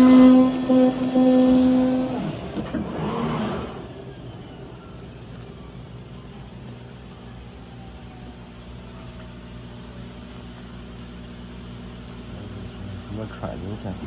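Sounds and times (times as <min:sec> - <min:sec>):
cutting machine whine: 0:00.0 - 0:11.0.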